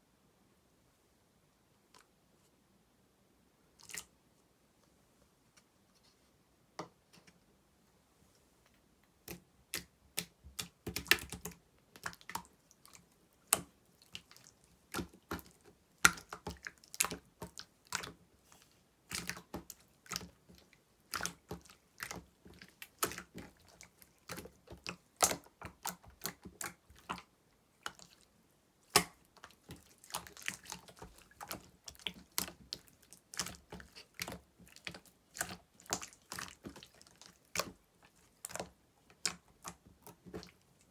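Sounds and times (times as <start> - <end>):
slime squishing: 9.2 - 40.9.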